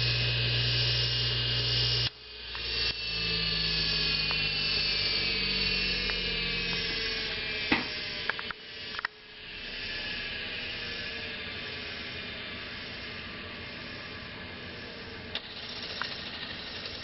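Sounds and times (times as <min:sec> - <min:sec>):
lathe motor whining: 0:00.0 - 0:17.0
sharp clicks: 0:07.7 - 0:09.2, 0:15.3 - 0:17.0.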